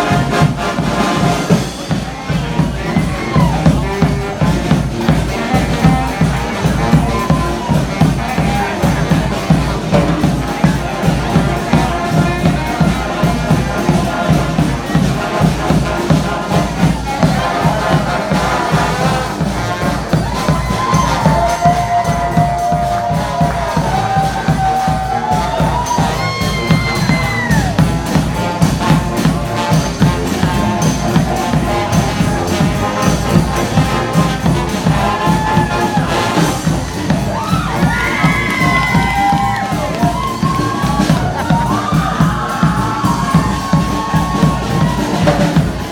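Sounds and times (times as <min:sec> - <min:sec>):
street band drum beat: 0:00.0 - 0:45.9
crowd cheering and whooping: 0:02.6 - 0:03.8, 0:06.7 - 0:08.6, 0:19.8 - 0:28.0, 0:34.9 - 0:45.9.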